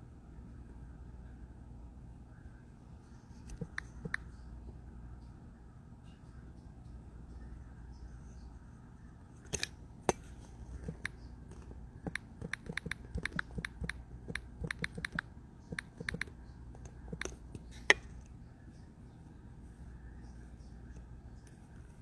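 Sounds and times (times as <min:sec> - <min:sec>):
keyboard key clicks: 0:03.5 - 0:04.2, 0:10.8 - 0:18.0.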